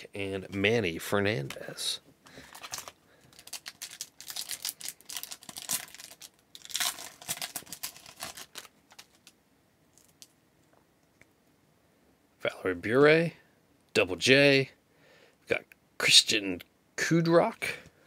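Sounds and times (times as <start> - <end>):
cards rustling: 1.3 - 9.3
wrapper tearing and crinkling: 2.4 - 9.3.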